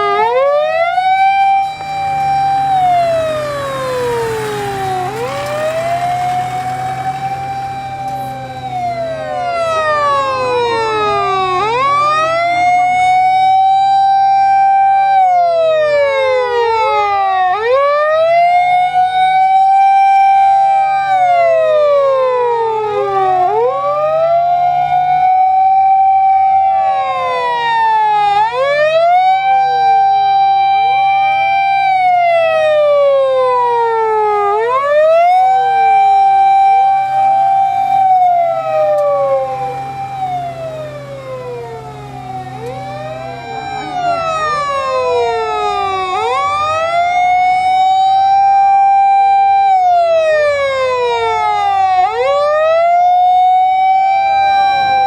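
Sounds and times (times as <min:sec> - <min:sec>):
emergency vehicle sirens wailing: 0:00.0 - 0:55.0
low engine hum: 0:00.3 - 0:27.8, 0:28.6 - 0:55.0.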